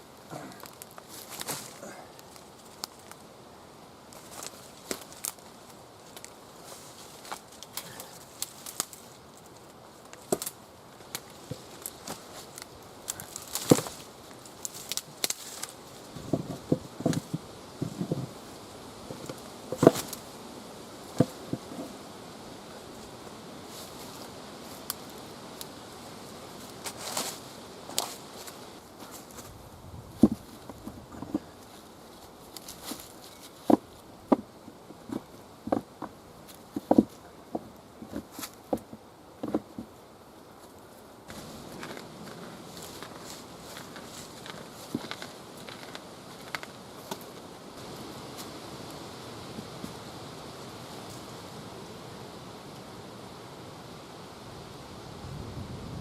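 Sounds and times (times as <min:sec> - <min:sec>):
faint steady hiss: 0:00.0 - 0:56.0
branches snapping: 0:00.3 - 0:03.2, 0:04.1 - 0:06.4, 0:07.1 - 0:18.4, 0:19.0 - 0:20.3, 0:26.6 - 0:29.6, 0:41.3 - 0:47.4.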